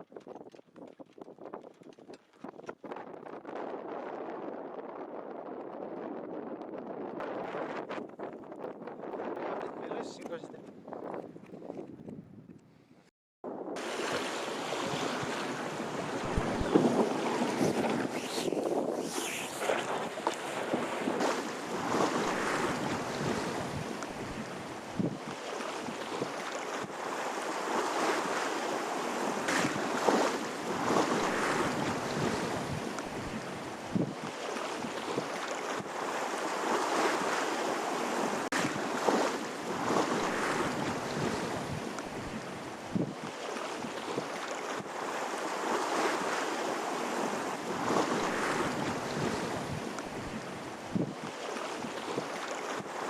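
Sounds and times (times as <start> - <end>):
wind buffeting microphone: 0.0 - 27.2, 29.2 - 36.4, 38.7 - 43.3, 47.2 - 51.3
water rushing along hull: 13.8 - 53.0.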